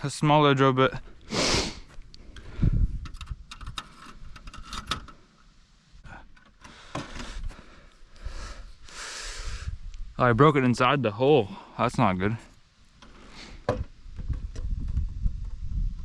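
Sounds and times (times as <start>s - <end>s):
metal parts clicking and rattling: 3.0s - 5.2s.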